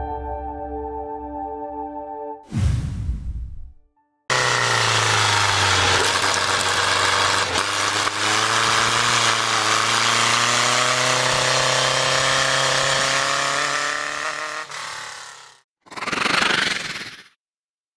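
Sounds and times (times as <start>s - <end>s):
sports car engine pulling under load: 4.3s - 15.6s.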